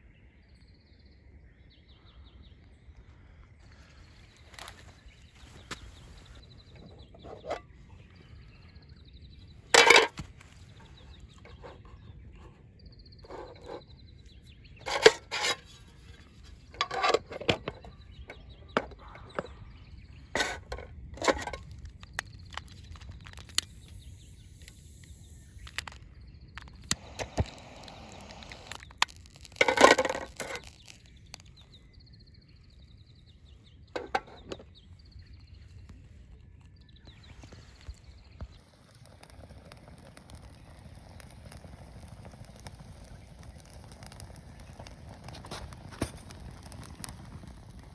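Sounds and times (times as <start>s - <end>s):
scraping or rustling: 14.8s - 18.0s.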